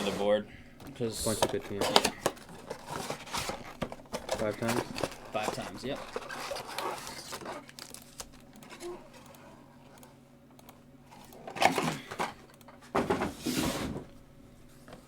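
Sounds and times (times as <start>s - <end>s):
packaging clicks and taps: 0.8s - 8.9s
wrapper crinkling and tearing: 1.6s - 8.9s.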